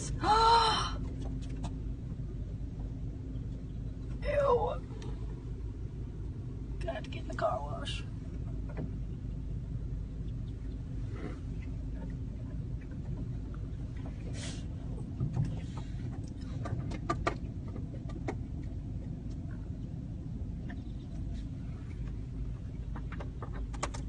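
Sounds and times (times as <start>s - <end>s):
car engine idling: 0.0s - 24.0s
birds calling: 3.2s - 5.2s, 9.0s - 11.9s, 20.6s - 23.8s.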